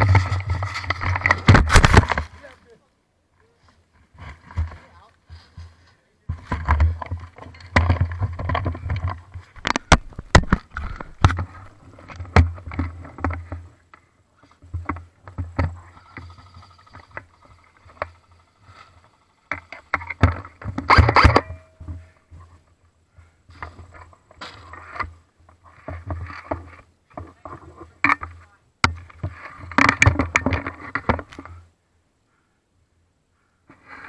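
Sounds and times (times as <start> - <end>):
sharp clicks and knocks: 6.4 - 13.5.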